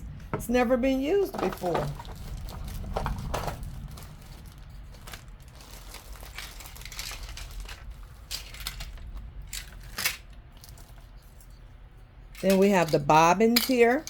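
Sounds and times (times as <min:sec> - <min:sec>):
packaging rustling: 0:01.2 - 0:11.5.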